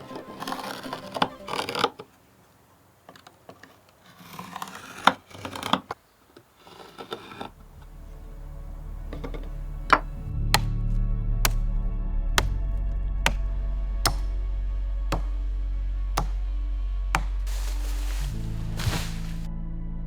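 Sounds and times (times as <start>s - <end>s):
music: 0.0s - 1.8s, 7.6s - 20.0s
hand tools scraping wood: 0.0s - 2.2s, 3.1s - 10.2s, 14.1s - 14.3s, 17.2s - 19.5s.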